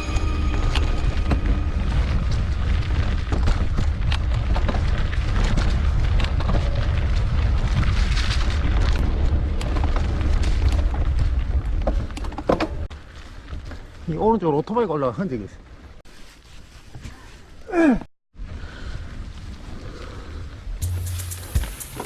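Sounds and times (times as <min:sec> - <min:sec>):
wind rumble on microphone: 0:00.0 - 0:14.0
bike rattling over rough ground: 0:01.2 - 0:14.8, 0:20.8 - 0:22.0.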